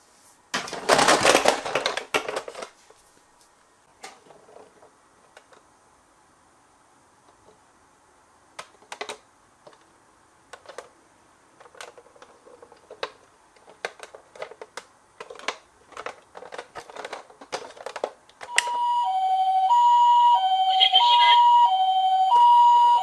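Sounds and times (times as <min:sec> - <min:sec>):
plastic toy cars clicking: 0:00.6 - 0:02.8, 0:08.5 - 0:09.9, 0:10.5 - 0:18.6
toy two-tone siren: 0:18.5 - 0:23.0.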